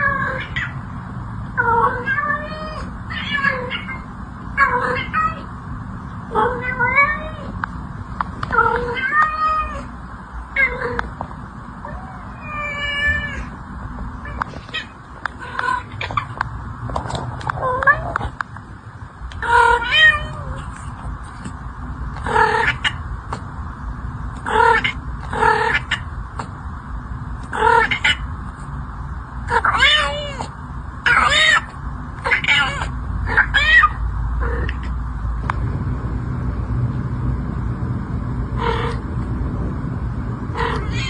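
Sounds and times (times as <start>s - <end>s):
cat meowing: 0.0s - 0.8s, 1.6s - 4.0s, 11.9s - 13.5s, 14.3s - 16.3s, 29.5s - 30.5s, 31.1s - 34.9s, 40.5s - 41.0s
steady low rumble: 0.0s - 41.0s.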